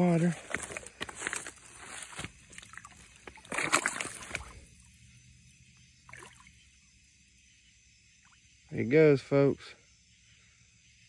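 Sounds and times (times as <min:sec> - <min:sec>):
fish splashing in water: 0:02.1 - 0:04.9, 0:06.0 - 0:06.6.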